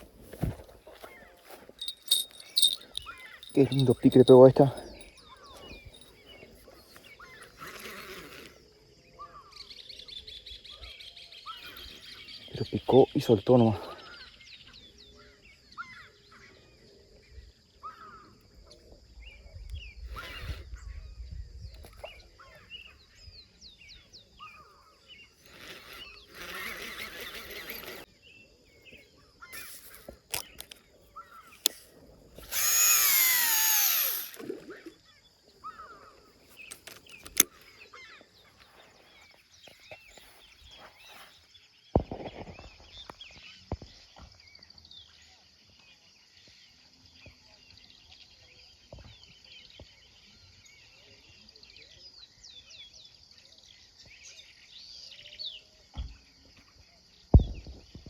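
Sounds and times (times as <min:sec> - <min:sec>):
insects buzzing: 0:00.0 - 0:08.8, 0:24.6 - 0:37.9
small birds chirping: 0:00.0 - 0:58.0.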